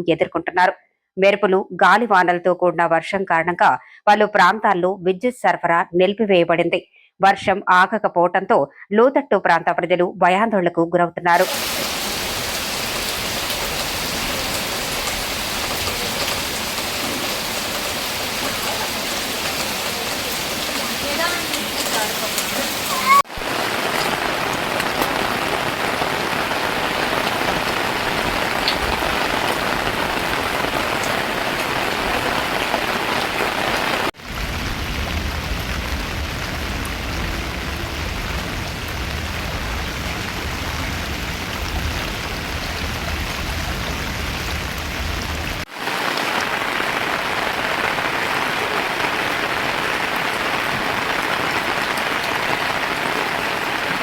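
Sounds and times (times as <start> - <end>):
heavy rain pattering: 11.4 - 54.0
low rumble: 34.2 - 45.6.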